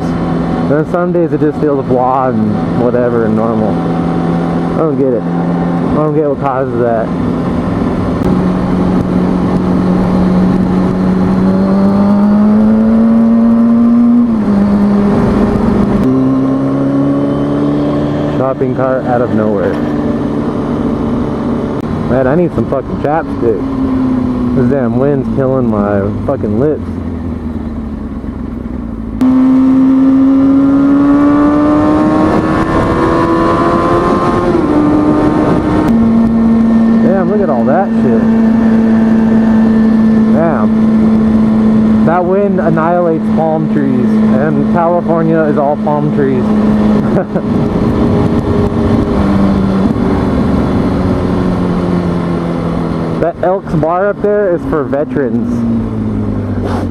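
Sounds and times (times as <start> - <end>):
motorcycle engine running: 0.0 - 56.9
wind rumble on microphone: 30.4 - 42.1, 45.7 - 56.9.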